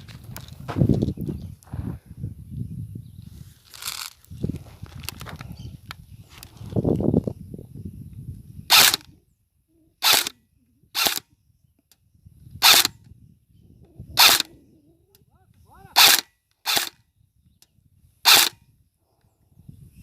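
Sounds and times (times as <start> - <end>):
rustling of movement: 3.2 - 7.0
airsoft gun shots: 16.0 - 16.9, 18.3 - 18.6.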